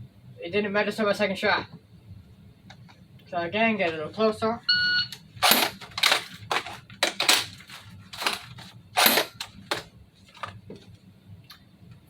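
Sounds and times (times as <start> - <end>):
plastic gun clicks and clacks: 5.4 - 10.6.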